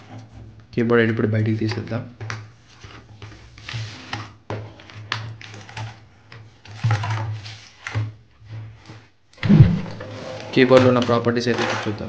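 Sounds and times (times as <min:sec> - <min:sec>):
steady low hum: 0:09.4 - 0:10.0.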